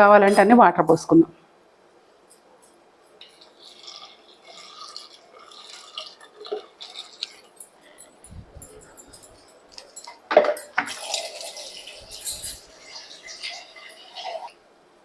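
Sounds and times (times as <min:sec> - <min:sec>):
water pouring into a pot: 0:03.2 - 0:08.1, 0:10.8 - 0:14.6.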